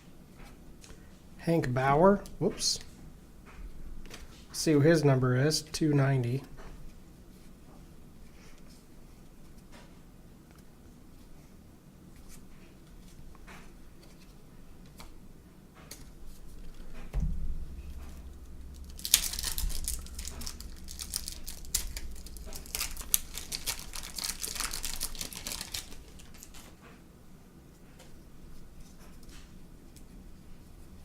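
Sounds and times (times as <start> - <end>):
low thump: 17.1 - 18.8
wrapper tearing and crinkling: 18.7 - 26.7
cards clicking: 18.8 - 26.7.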